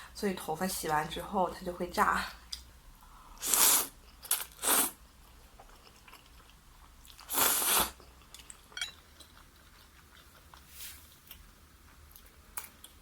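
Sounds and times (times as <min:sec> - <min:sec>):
quiet chewing: 0:05.2 - 0:07.4, 0:08.0 - 0:13.0.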